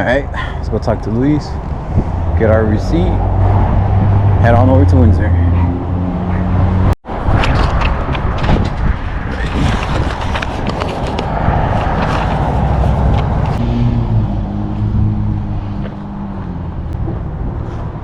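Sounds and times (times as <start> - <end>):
rattling and clatter: 7.3 - 13.6.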